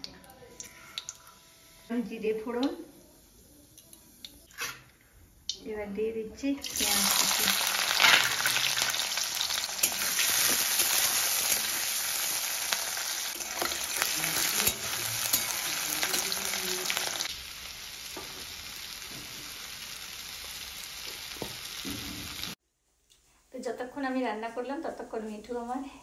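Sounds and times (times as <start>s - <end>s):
onion sizzling in hot oil: 6.6s - 22.6s.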